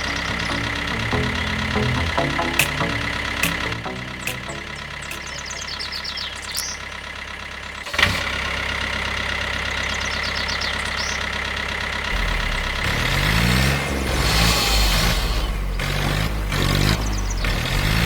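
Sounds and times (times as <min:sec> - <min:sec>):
engine running and revving: 0:00.0 - 0:18.0.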